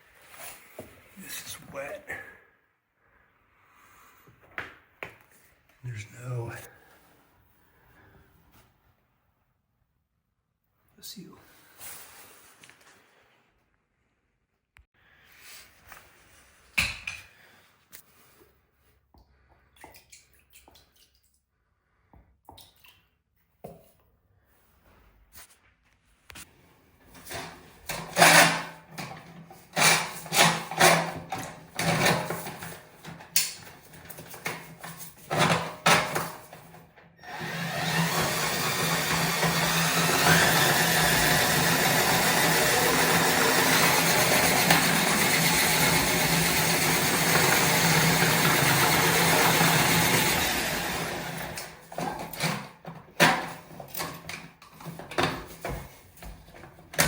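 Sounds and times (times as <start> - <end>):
small electric power tool running: 37.2 - 51.9.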